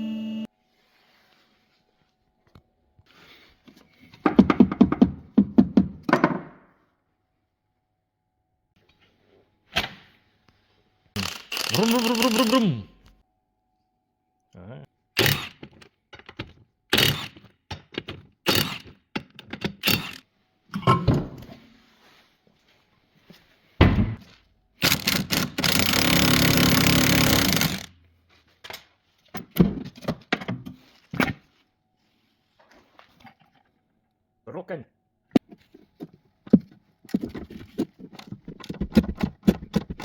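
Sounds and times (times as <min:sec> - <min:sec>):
impact wrench running: 0:11.2 - 0:12.7, 0:15.2 - 0:15.8, 0:16.9 - 0:17.5, 0:18.5 - 0:19.0, 0:19.8 - 0:20.2, 0:24.8 - 0:27.9.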